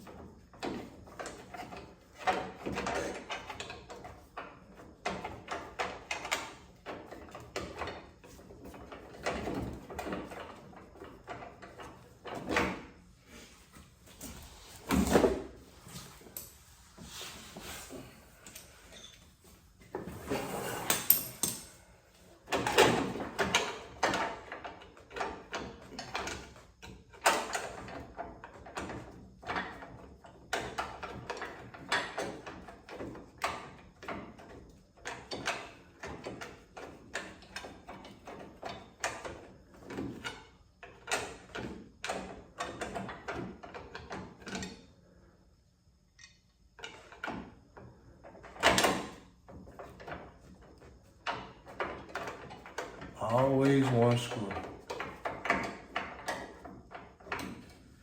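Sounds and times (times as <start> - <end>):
tools clicking and clanking on metal: 0.1 - 12.8, 18.4 - 19.3, 20.0 - 21.8.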